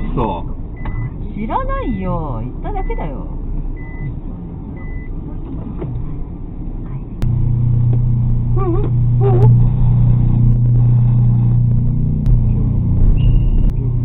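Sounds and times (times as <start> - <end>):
vehicle engine humming: 0.0 - 14.0
short high beep: 13.2 - 13.7.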